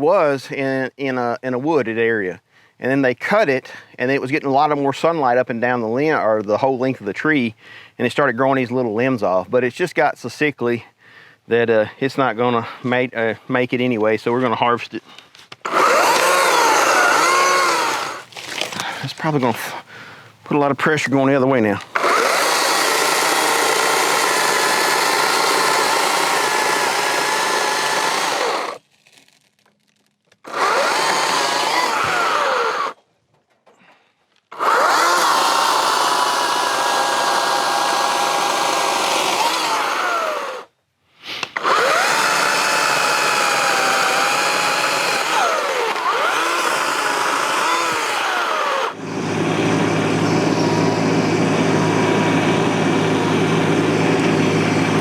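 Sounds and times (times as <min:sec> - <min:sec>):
chainsaw cutting wood: 0:15.5 - 0:20.4, 0:21.8 - 0:28.8, 0:30.4 - 0:33.0, 0:34.4 - 0:40.7, 0:41.4 - 0:55.0
tractor diesel engine running: 0:15.7 - 0:20.5, 0:21.6 - 0:28.8, 0:30.5 - 0:32.9, 0:41.6 - 0:55.0.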